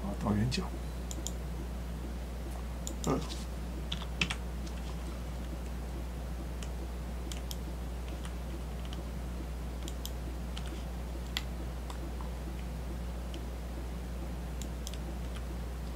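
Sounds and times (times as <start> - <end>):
steady low hum: 0.0 - 15.9
keyboard and mouse clicks: 1.1 - 1.4, 3.8 - 4.8, 6.4 - 9.0, 9.8 - 12.7, 14.6 - 15.9.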